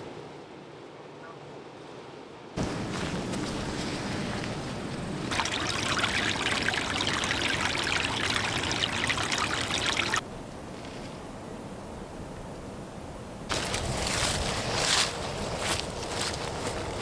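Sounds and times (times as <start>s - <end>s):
water trickling and splashing: 5.3s - 10.2s.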